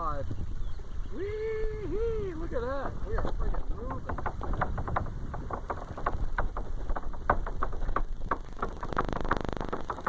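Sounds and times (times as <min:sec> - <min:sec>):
water ticks and slaps: 0:02.3 - 0:10.0.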